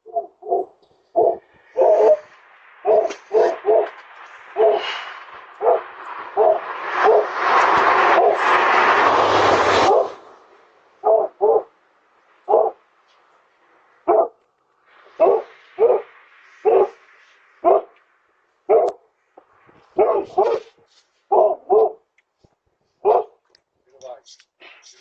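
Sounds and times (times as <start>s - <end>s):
dog barking: 0.0s - 5.0s, 5.6s - 7.4s, 8.1s - 8.4s, 9.9s - 10.2s, 11.0s - 11.8s, 12.5s - 12.8s, 14.0s - 14.4s, 15.2s - 17.0s, 17.6s - 18.0s, 18.7s - 19.0s, 20.0s - 22.1s, 23.0s - 23.4s.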